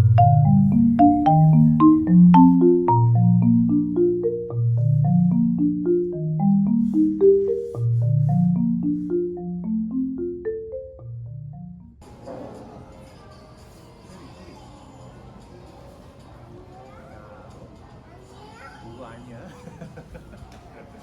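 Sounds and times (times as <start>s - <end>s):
soft bass line: 0.0s - 10.0s
marimba tune: 0.0s - 12.0s.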